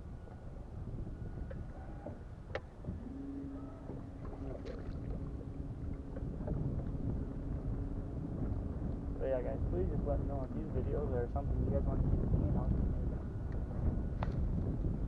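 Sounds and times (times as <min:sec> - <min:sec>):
steady low hum: 0:00.0 - 0:15.0
wind buffeting microphone: 0:00.0 - 0:15.0.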